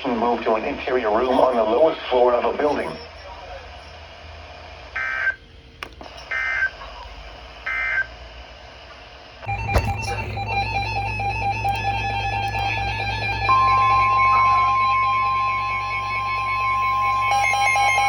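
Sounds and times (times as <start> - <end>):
guitar music: 9.5 - 18.0.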